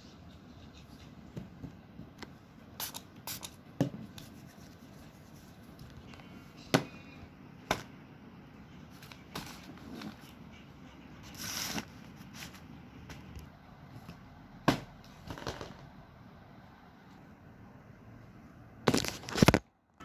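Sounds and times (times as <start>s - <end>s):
paper rustling and crinkling: 8.9s - 10.3s, 18.9s - 19.6s.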